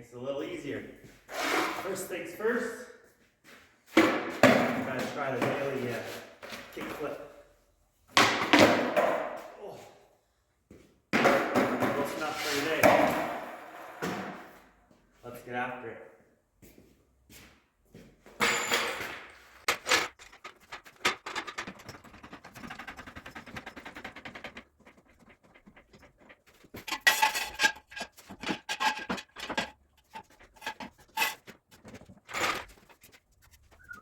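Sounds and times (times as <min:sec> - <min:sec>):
metal tools clinking: 0:18.4 - 0:23.6, 0:25.7 - 0:33.0.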